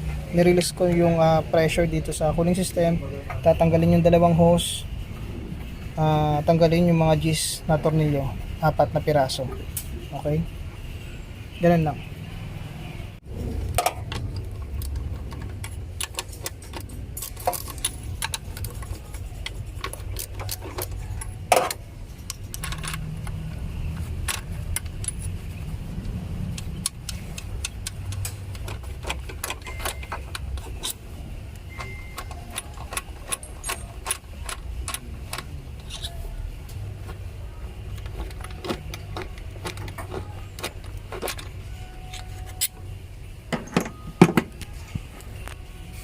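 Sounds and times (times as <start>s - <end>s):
metal tools clinking: 13.8s - 25.6s, 26.6s - 36.4s, 37.0s - 42.9s, 43.5s - 44.5s.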